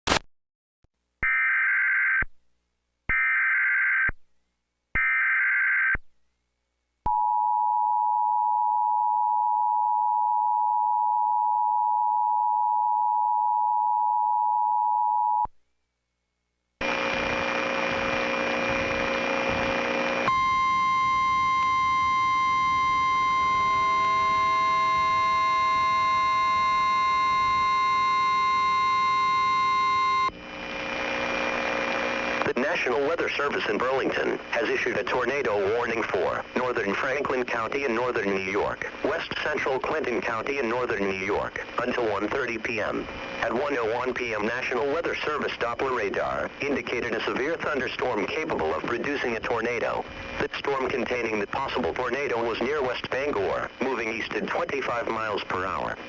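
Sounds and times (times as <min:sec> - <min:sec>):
two-tone attention signal: 0:20.3 - 0:30.3.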